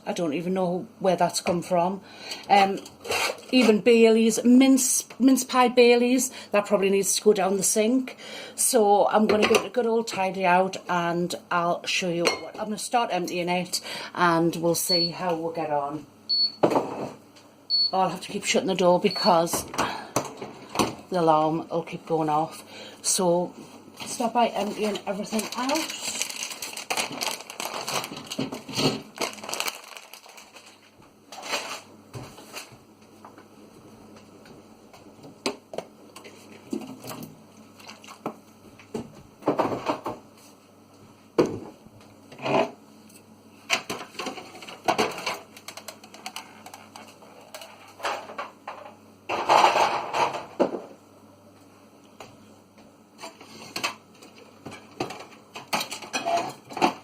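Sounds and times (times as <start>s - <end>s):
faint low fridge hum: 0.0s - 57.0s
items knocking and clinking: 24.8s - 30.4s.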